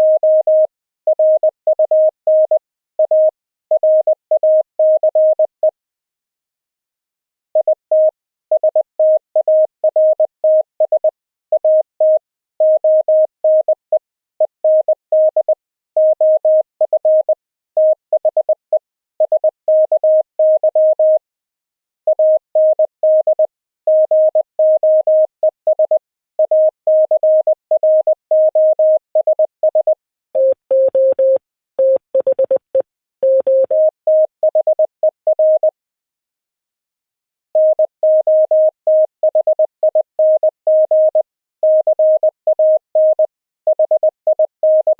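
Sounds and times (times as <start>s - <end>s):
morse code sine-wave tone: 14.4s - 18.6s, 22.3s - 35.8s, 37.6s - 44.9s.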